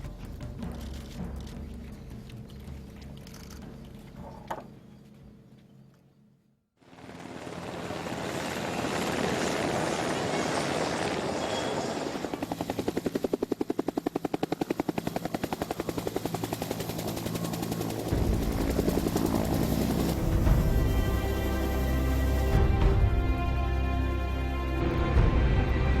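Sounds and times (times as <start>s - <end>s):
helicopter rotor chop: 6.9s - 26.0s
low music: 18.1s - 26.0s.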